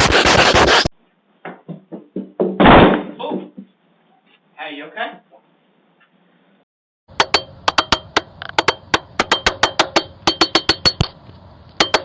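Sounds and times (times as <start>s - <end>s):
sharp knocks: 7.1s - 11.2s, 11.8s - 12.0s.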